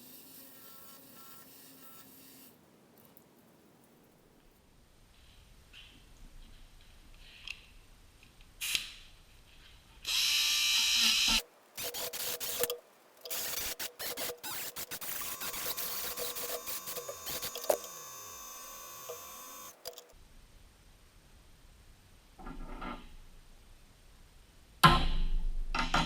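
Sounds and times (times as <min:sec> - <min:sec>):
machine high whine: 0:13.3 - 0:19.8.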